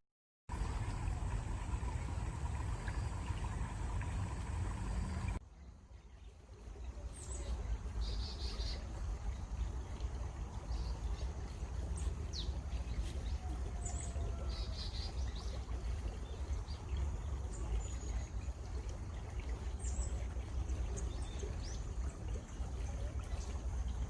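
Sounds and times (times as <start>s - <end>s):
low rumble: 0.5s - 5.4s
flowing water: 0.5s - 24.0s.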